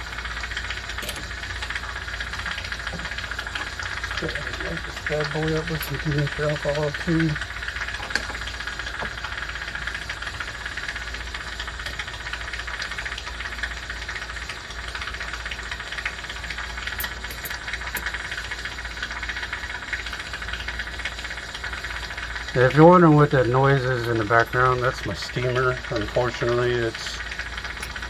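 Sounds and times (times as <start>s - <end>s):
steam cleaner hissing: 0.0s - 13.2s.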